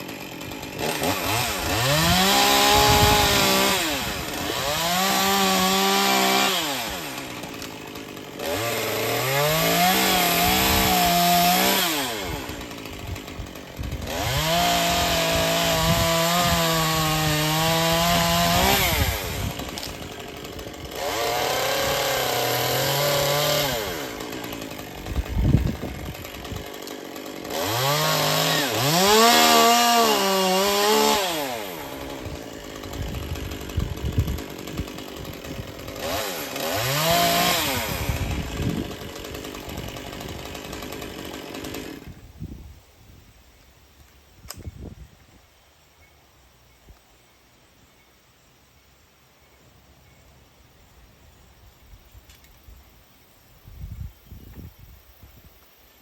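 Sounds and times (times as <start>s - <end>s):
chainsaw revving and idling: 0.0s - 42.3s.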